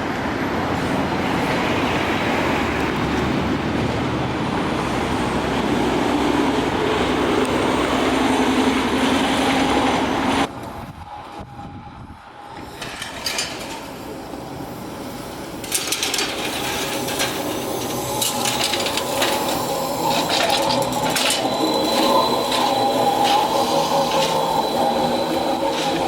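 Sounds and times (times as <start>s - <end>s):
train approaching: 0.0s - 26.0s
thin high whine: 17.2s - 26.0s.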